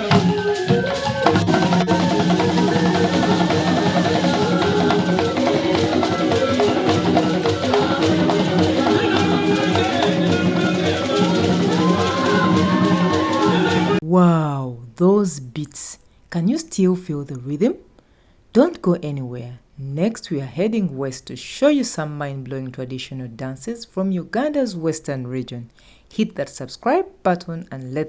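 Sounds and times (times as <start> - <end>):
tuned drums played with sticks: 0.0 - 14.0.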